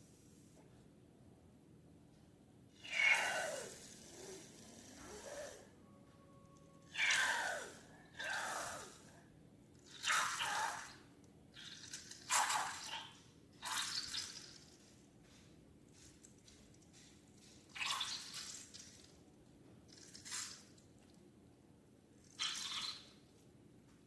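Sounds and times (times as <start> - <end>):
slime squishing: 9.8 - 14.9, 15.9 - 19.2.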